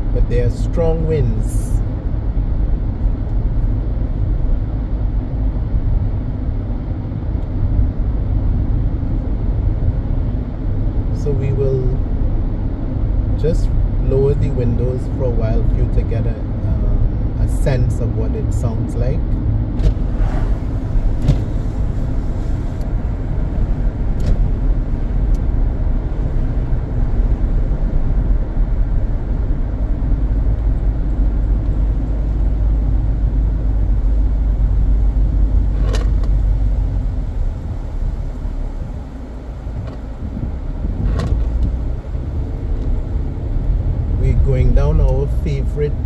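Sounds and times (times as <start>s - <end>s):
tyre and road rumble: 16.0s - 46.0s
wind buffeting through car windows: 18.4s - 46.0s.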